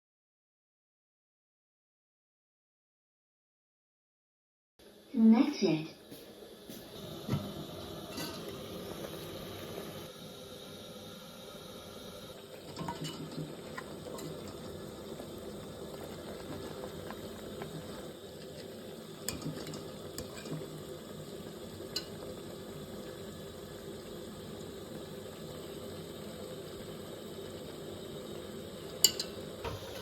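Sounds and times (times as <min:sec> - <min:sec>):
pot boiling and bubbling: 0:06.0 - 0:30.0
kitchen utensils clicking: 0:12.6 - 0:14.8.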